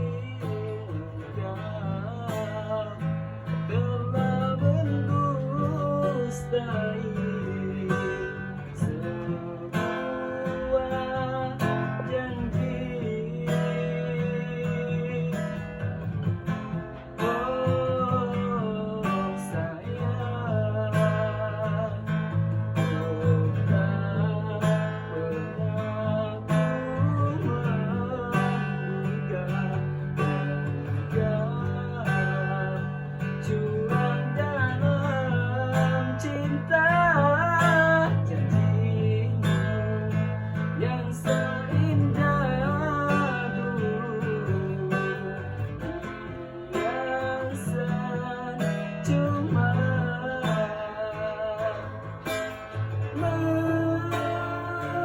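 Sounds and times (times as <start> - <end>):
strummed acoustic guitar: 0.0 - 55.0
person singing: 17.2 - 55.0.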